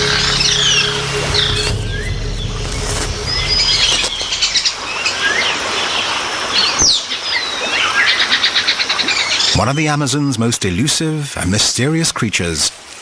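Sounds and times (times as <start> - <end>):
birds calling: 0.0 - 10.1.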